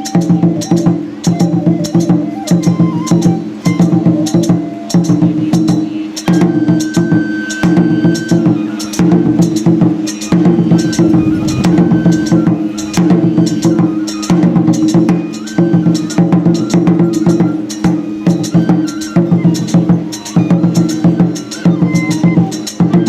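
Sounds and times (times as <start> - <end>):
short high flute note: 6.4 - 23.0
rapid drum strikes: 8.8 - 15.4
low drone: 10.6 - 13.9.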